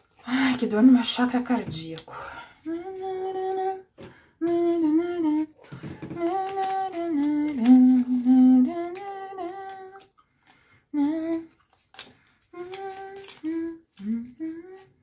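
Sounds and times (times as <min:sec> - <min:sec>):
woman humming: 0:02.6 - 0:10.1, 0:11.0 - 0:11.5, 0:12.6 - 0:15.0.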